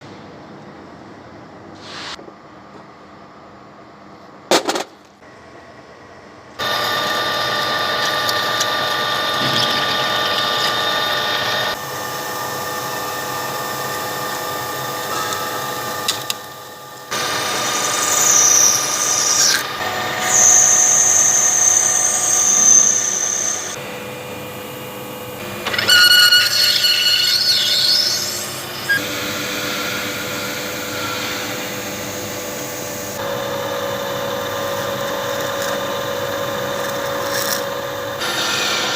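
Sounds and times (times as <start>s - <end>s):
lathe gear whine: 6.6s - 23.8s, 24.7s - 38.9s
cutting tool squealing on nylon: 25.7s - 29.0s.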